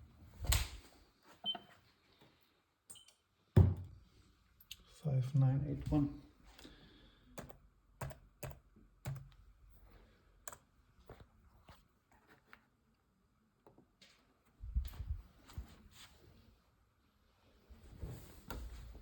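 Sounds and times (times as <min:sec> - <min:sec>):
faint clicks and taps: 0:07.4 - 0:09.5.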